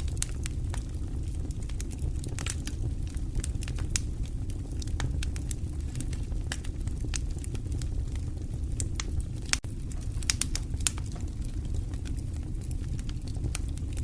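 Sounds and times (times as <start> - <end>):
fire crackling and popping: 0.0 - 14.0
low rush of flame: 0.0 - 14.0.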